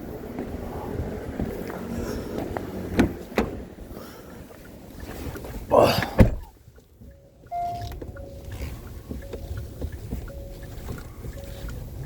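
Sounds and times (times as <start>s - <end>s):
low rumble: 0.0s - 5.8s
heavy thump: 6.1s - 6.5s
short electronic beeps: 7.0s - 12.0s.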